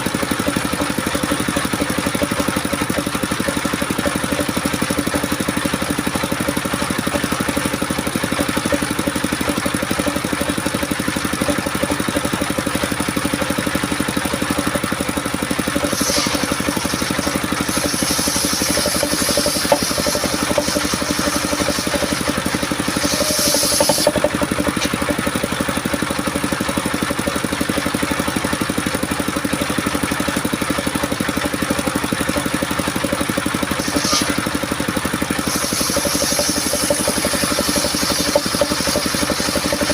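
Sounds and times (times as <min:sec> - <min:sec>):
engine-driven circular saw running: 0:00.0 - 0:39.9
saw blade hissing through wood: 0:15.7 - 0:25.2, 0:33.8 - 0:34.6, 0:35.3 - 0:39.9.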